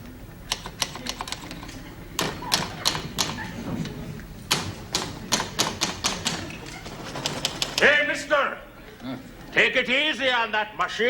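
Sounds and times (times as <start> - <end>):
knocks on vending machine: 4.5 - 6.4.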